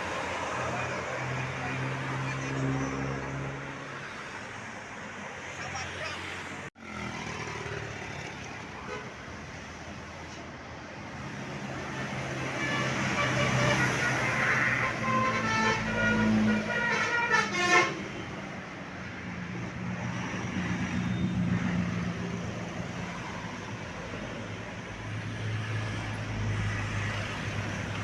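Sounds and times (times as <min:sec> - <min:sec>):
bus engine hum: 0:00.0 - 0:28.0
road noise: 0:00.0 - 0:28.0
bus musical horn: 0:12.5 - 0:18.4.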